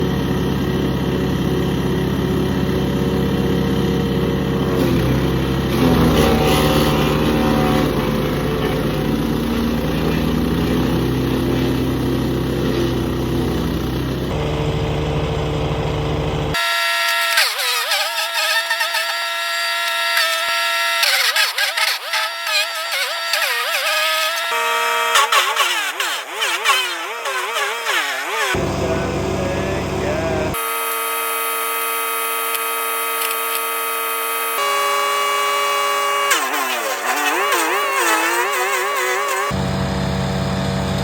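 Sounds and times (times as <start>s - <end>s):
wood chipper engine running: 0.0s - 41.0s.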